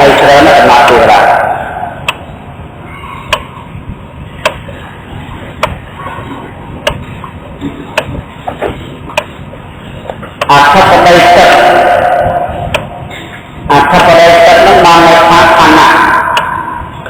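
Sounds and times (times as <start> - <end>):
low background rumble: 0.0 - 17.0
sharp ticking: 0.8 - 2.5, 4.4 - 4.8, 5.6 - 5.9, 6.8 - 8.2, 11.4 - 13.2.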